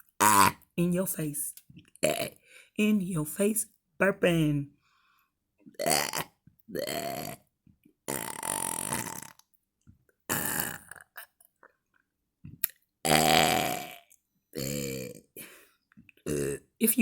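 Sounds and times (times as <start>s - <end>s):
woman burping: 2.0s - 2.4s, 5.8s - 7.4s, 8.1s - 9.3s, 10.3s - 11.3s, 13.1s - 14.0s, 14.6s - 15.6s, 16.2s - 16.7s.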